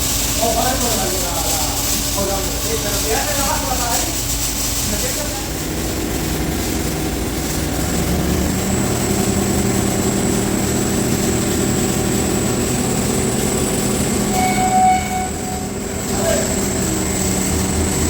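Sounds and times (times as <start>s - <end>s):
welding arc buzzing: 0.0s - 18.0s
brief louder tone: 14.3s - 16.1s.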